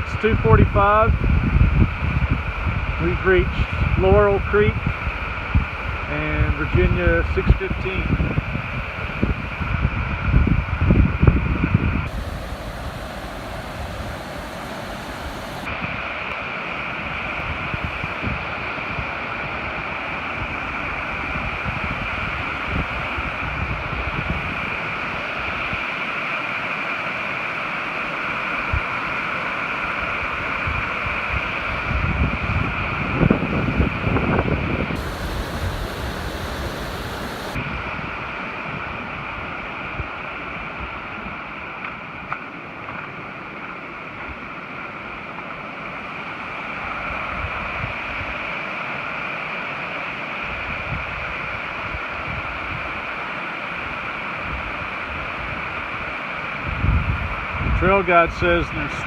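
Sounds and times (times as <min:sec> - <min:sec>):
wind gusts on microphone: 0:00.0 - 0:16.2, 0:30.6 - 0:40.1, 0:56.6 - 0:59.0
water rushing over rocks: 0:12.1 - 0:15.7.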